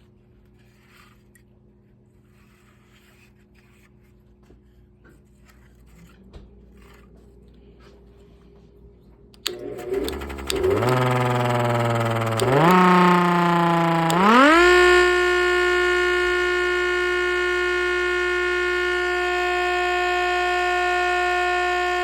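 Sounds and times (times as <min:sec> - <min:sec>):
low hum: 0:07.0 - 0:22.0
bench grinder spinning: 0:09.4 - 0:22.0
siren wailing: 0:10.6 - 0:22.0.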